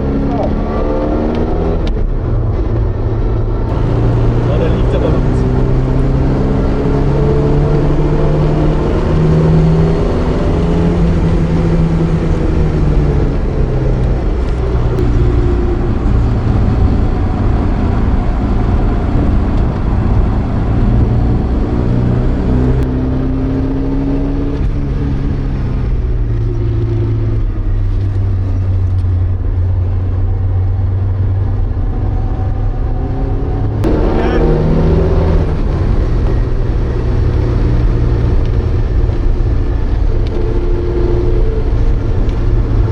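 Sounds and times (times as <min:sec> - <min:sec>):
car engine from inside cabin: 0:00.0 - 0:42.9.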